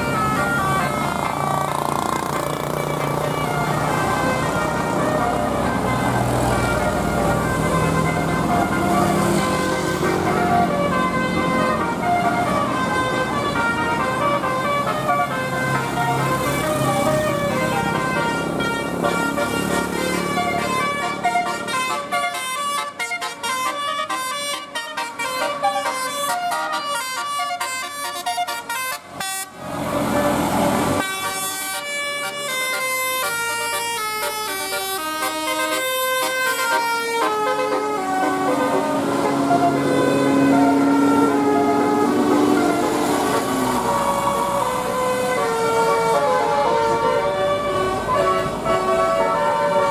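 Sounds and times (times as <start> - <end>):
multi-tone bus horn playing a tune: 0.0 - 49.9
road noise: 0.0 - 49.9
musical air horn tune: 31.0 - 49.9.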